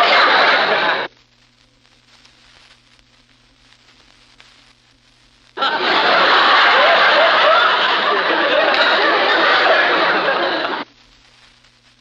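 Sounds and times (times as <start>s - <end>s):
laugh track: 0.0s - 1.1s, 5.6s - 10.9s
faint hiss and low hum: 0.0s - 12.0s.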